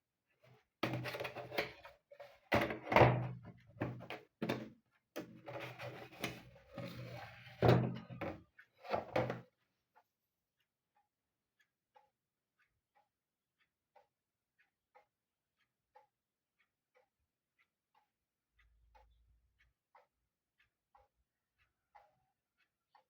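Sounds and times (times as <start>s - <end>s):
plastic clock knocking and rattling: 0.8s - 9.4s.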